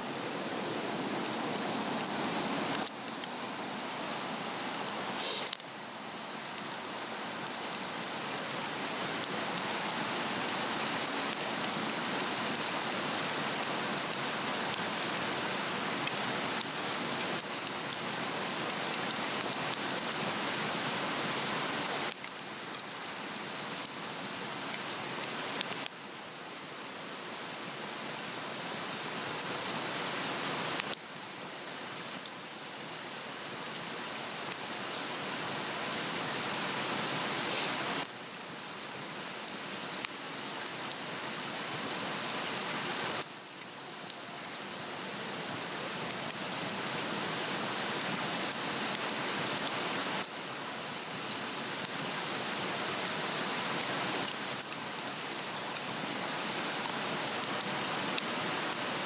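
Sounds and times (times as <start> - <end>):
fire crackles: 0.0 - 25.9
flame hissing rush: 5.0 - 5.6.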